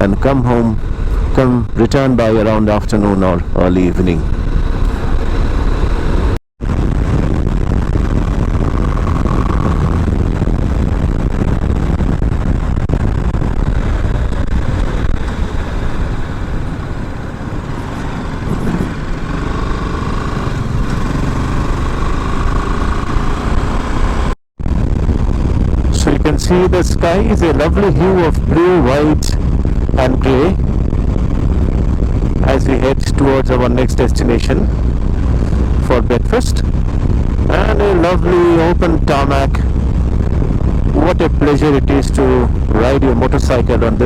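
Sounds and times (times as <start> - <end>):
wind rushing over microphone: 0.0 - 44.0
motorcycle engine running: 7.9 - 24.4.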